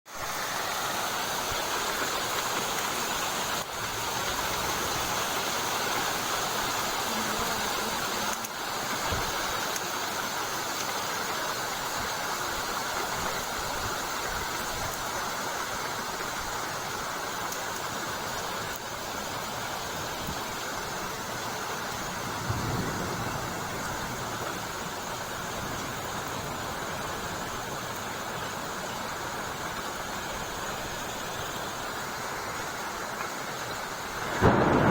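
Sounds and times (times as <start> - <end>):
heavy rain: 0.1 - 34.9.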